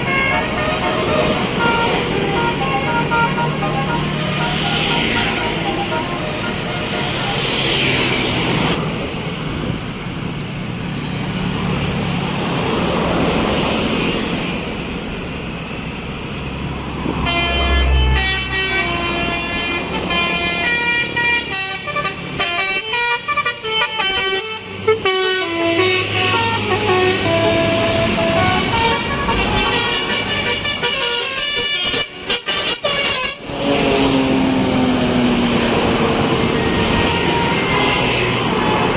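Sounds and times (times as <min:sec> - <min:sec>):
multi-tone bus horn tune: 0:00.0 - 0:08.8, 0:17.1 - 0:34.4, 0:35.6 - 0:38.9
bus engine: 0:00.0 - 0:38.9
traffic: 0:00.0 - 0:38.9.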